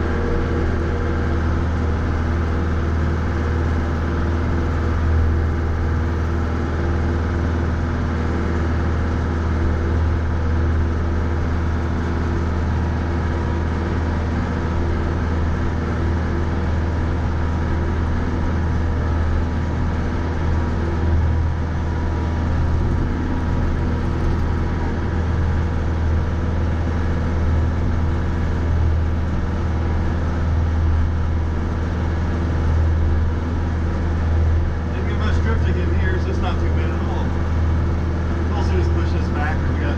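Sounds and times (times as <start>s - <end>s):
tractor engine droning: 21.6s - 39.9s.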